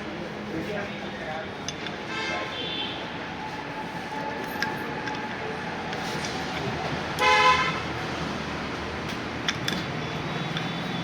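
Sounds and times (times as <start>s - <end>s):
street noise: 0.0s - 11.0s
vehicle horn toot: 7.2s - 7.8s.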